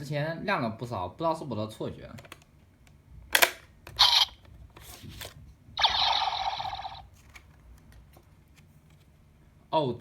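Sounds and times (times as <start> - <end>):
toy gun sharp burst: 4.0 - 4.4, 5.8 - 7.0
electronic sound effect from small speaker: 5.8 - 7.1.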